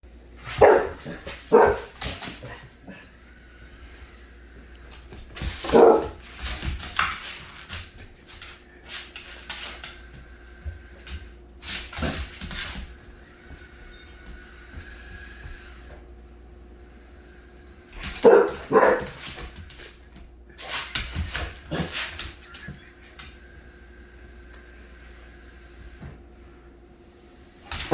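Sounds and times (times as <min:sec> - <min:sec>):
faint steady hum: 0:00.1 - 0:27.9
dog barking: 0:00.6 - 0:01.9, 0:05.6 - 0:06.2, 0:18.2 - 0:19.2.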